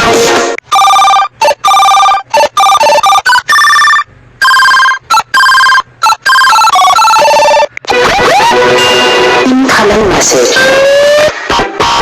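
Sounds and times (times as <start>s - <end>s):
electronic phone ringtone melody: 0.7s - 9.3s
sung guitar ringtone: 0.8s - 9.4s.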